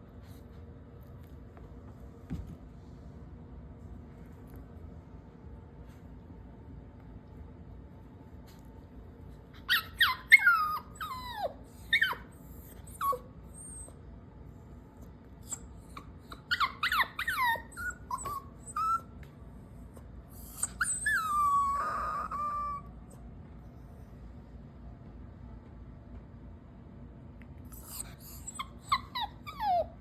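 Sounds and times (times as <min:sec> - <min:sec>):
dog whining: 0:09.6 - 0:14.0, 0:15.4 - 0:19.2, 0:20.3 - 0:23.1, 0:27.7 - 0:30.0.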